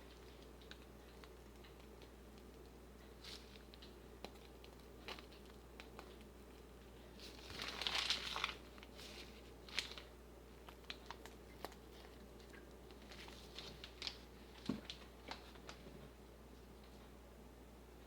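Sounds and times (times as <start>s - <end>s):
plastic bag crinkling: 7.2s - 15.9s.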